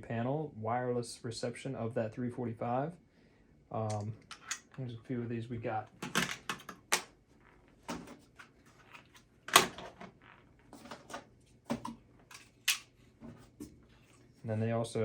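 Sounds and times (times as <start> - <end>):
plastic devices clicking and knocking: 6.0 - 7.1.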